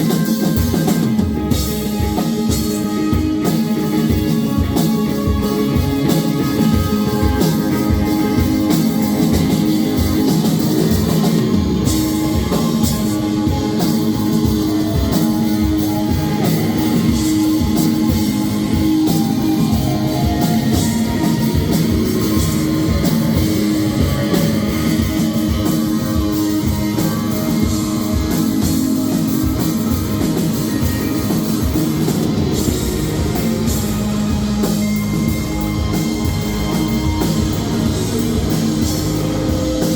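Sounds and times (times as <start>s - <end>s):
rock band playing live: 0.0s - 39.9s.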